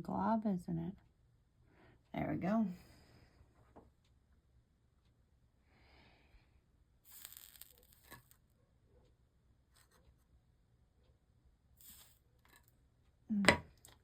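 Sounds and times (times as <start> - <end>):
soldering iron sizzling: 7.0 - 8.4, 11.8 - 12.3.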